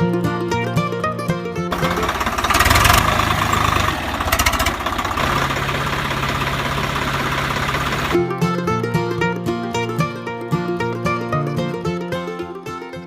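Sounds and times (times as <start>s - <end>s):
engine running with rapid chatter: 1.7s - 8.2s
background music: 8.1s - 13.0s.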